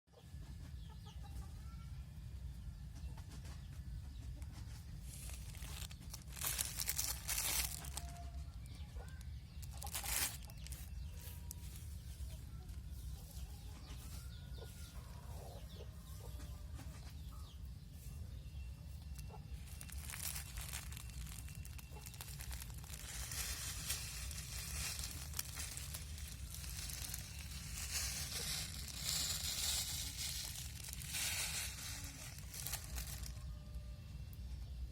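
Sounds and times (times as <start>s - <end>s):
chickens clucking: 0.1s - 1.8s, 3.0s - 33.6s
loud rustling: 5.0s - 8.2s, 19.7s - 33.4s.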